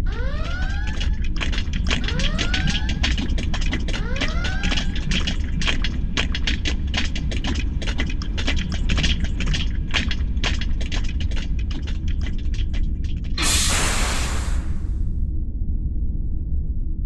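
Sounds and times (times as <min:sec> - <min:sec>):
rapid clicking and ticking: 0:00.0 - 0:13.4
low machinery rumble: 0:00.0 - 0:17.0
loud hiss: 0:13.4 - 0:14.9.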